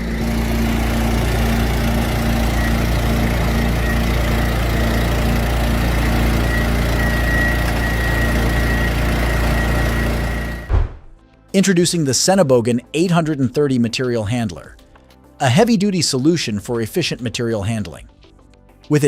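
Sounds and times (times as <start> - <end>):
high suction fan whine: 0.0 - 10.7
vacuum truck engine drone: 0.0 - 10.8.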